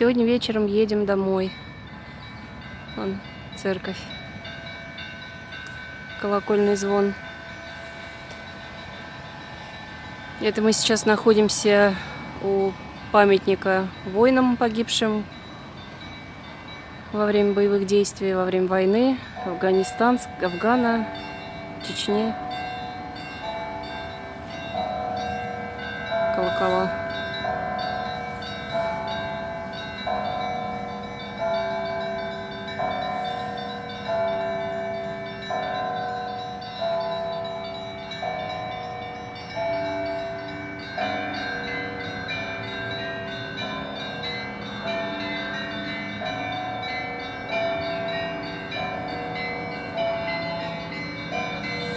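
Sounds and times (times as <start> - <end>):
church bells ringing: 0.0 - 51.9.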